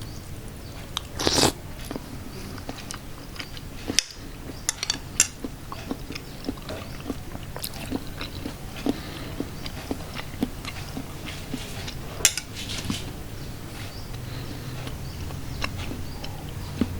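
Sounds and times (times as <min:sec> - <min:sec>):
slurping soup: 0:00.9 - 0:12.9
mouth clicks and smacks: 0:01.0 - 0:02.0, 0:05.4 - 0:12.0.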